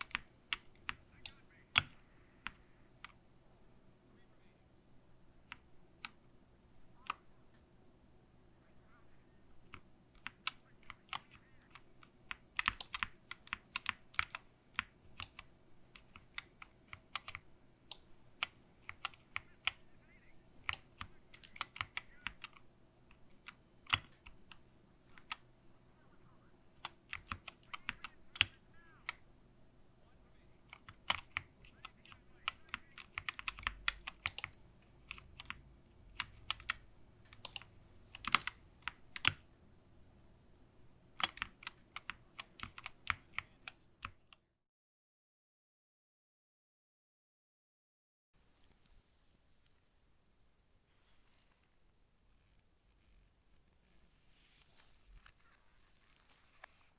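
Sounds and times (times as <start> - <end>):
keyboard keystroke clicks: 9.7 - 19.8, 30.7 - 35.6, 36.2 - 39.4, 41.2 - 44.2.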